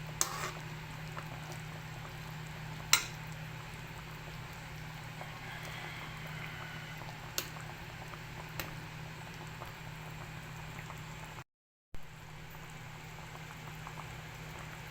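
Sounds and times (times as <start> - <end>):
food sizzling in a pan: 0.0 - 11.3.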